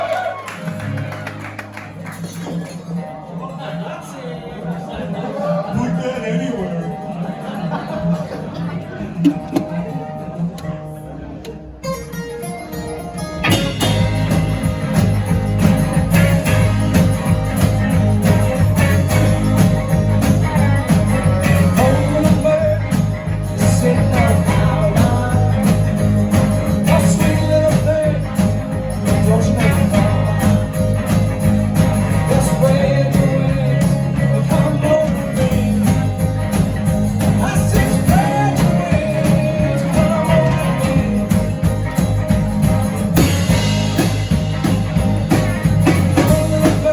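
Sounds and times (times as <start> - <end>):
live band playing: 0.0 - 46.9
low bass line: 13.4 - 46.9.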